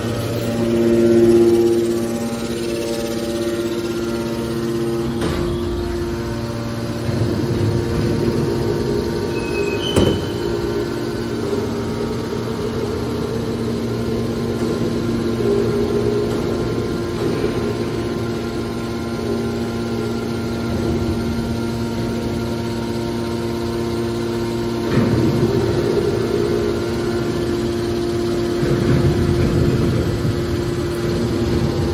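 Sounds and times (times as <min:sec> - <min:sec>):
pump motor hum: 0:00.0 - 0:31.9.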